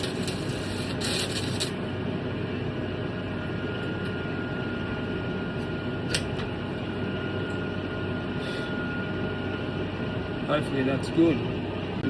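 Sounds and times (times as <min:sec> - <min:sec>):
welding arc crackling: 0:00.0 - 0:01.8.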